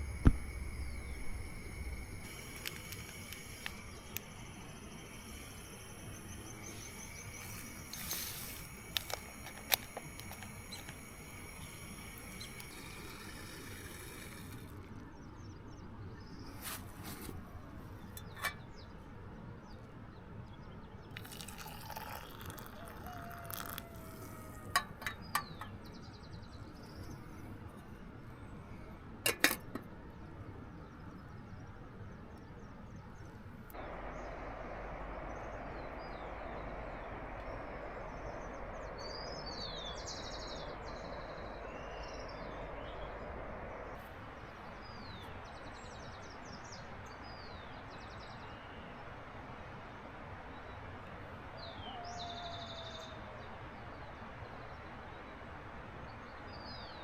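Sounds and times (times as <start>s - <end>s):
steady hiss: 0.0s - 15.3s, 33.7s - 45.1s
insects chirping: 0.0s - 15.4s, 21.2s - 25.7s, 33.7s - 45.6s
loud steady rushing noise: 33.8s - 44.5s.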